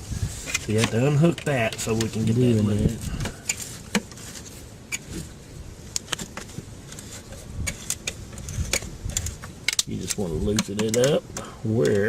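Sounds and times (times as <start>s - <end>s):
hand tool clicking on metal: 7.7s - 12.0s.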